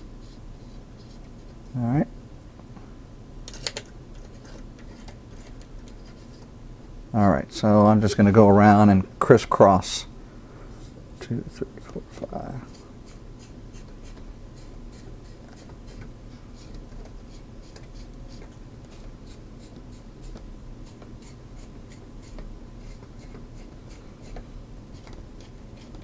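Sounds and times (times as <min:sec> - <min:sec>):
light clicks and scratches: 0:03.5 - 0:06.5, 0:10.8 - 0:26.0.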